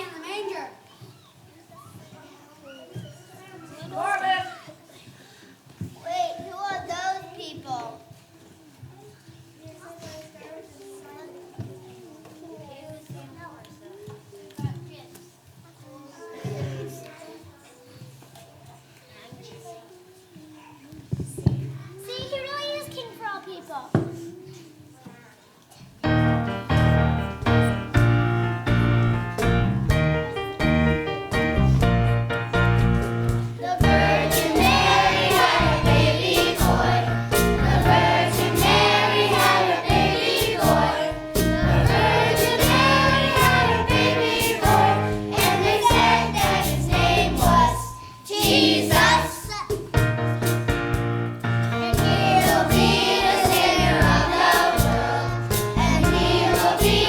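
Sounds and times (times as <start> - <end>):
live band playing: 26.1 - 57.0
choir singing: 33.3 - 49.4, 52.0 - 57.0.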